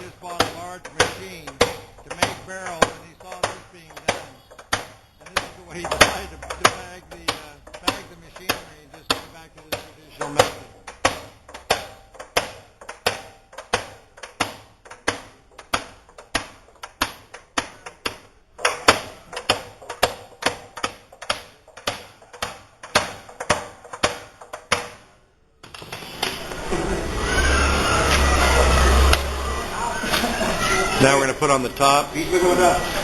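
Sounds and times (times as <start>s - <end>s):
steady noise: 0.0s - 12.2s
hammer striking barrel hoops: 0.0s - 25.2s.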